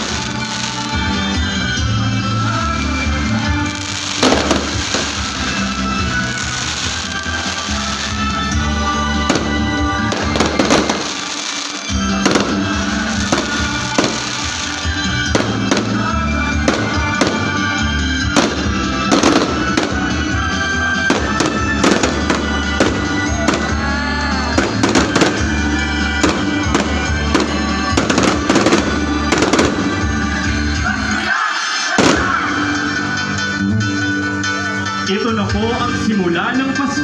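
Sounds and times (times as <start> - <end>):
fireworks banging: 0.0 - 33.6
loud festive music: 0.0 - 37.0.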